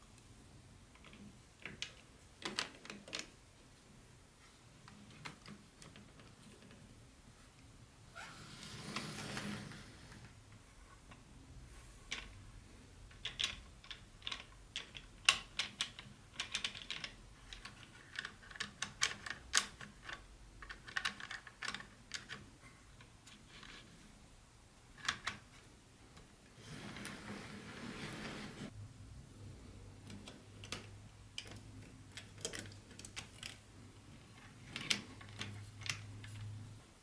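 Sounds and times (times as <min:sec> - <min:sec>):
plastic pieces clicking and tapping: 0:01.0 - 0:03.4, 0:13.1 - 0:22.5
soft rustle: 0:06.4 - 0:11.0, 0:26.4 - 0:28.8.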